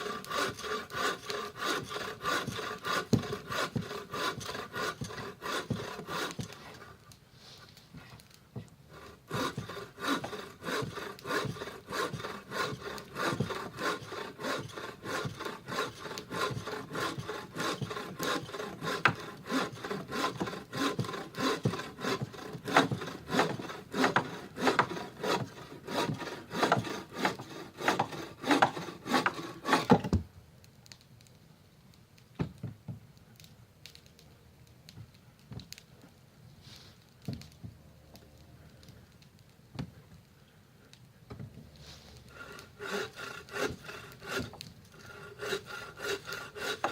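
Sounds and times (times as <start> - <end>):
hand saw cutting wood: 0.0 - 7.1, 8.9 - 30.2, 41.9 - 46.9.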